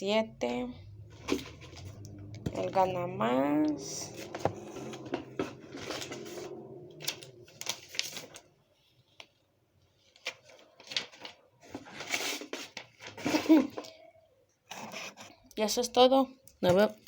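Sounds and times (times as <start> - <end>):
paper rustling: 3.8 - 8.5, 10.0 - 14.0.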